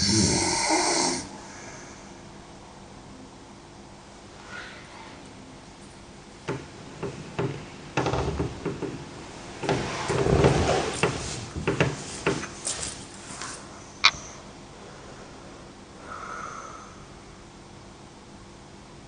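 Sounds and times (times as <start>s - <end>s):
rustling: 9.8s - 13.7s.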